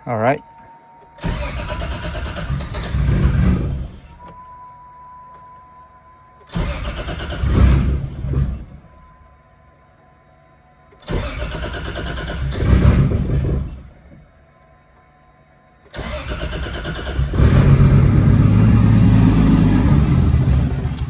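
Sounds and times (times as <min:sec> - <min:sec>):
car engine starter cranking: 0:01.0 - 0:04.5, 0:06.4 - 0:09.1, 0:10.9 - 0:14.2, 0:15.8 - 0:21.0.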